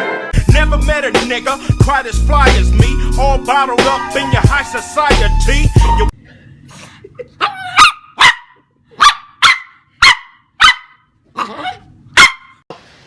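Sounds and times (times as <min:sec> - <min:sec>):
dog barking: 0:07.4 - 0:12.6.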